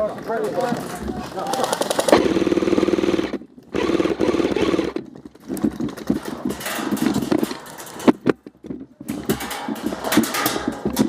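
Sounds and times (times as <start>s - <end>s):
airsoft gun full-auto burst: 1.6s - 5.0s.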